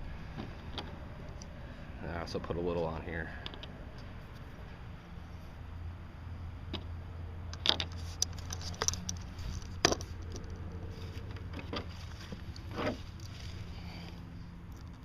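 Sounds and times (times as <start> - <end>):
steady low hum: 0.0 - 15.0
small hard parts clicking: 7.5 - 10.7.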